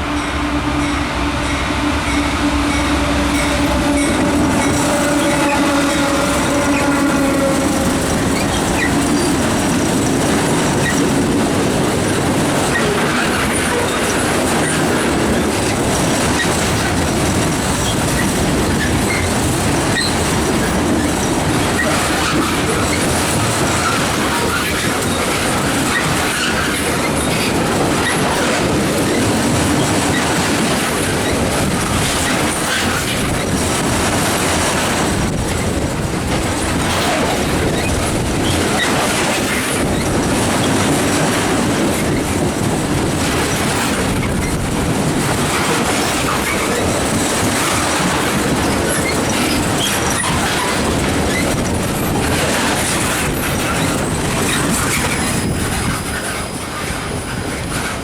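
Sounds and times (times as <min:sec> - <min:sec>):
train wheels on rail: 0:00.0 - 0:58.0
clickety-clack over rail joints: 0:00.8 - 0:58.0
wheel squeal: 0:48.7 - 0:52.2, 0:53.4 - 0:57.9.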